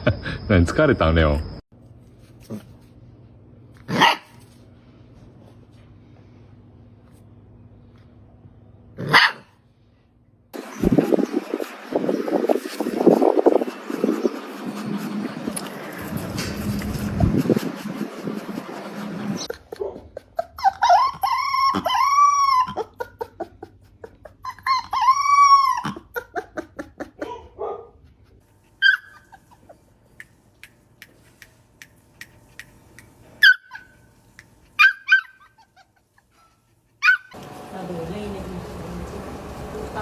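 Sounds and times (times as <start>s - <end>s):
puppy howling and yelping: 19.4s - 27.5s, 28.8s - 29.9s, 33.4s - 34.1s, 34.8s - 37.4s.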